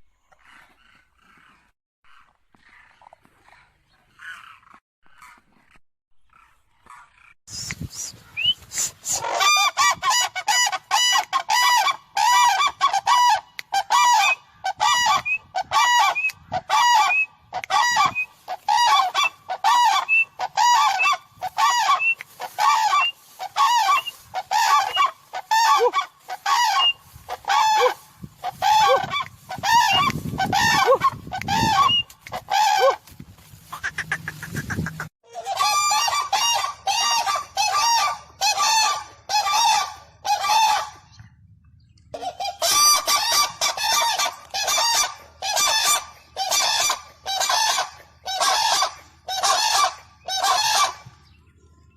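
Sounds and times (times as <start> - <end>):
cranes calling: 8.0 - 41.2.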